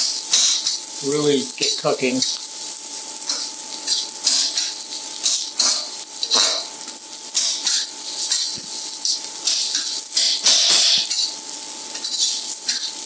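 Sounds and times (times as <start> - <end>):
food sizzling in hot oil: 0.0 - 13.0.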